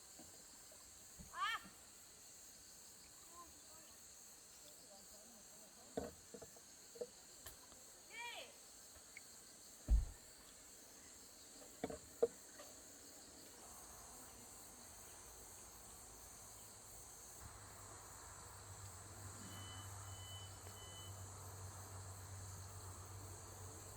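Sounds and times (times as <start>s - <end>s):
high-pitched insect chorus: 0.0s - 23.9s
loud low thump: 9.9s - 10.2s.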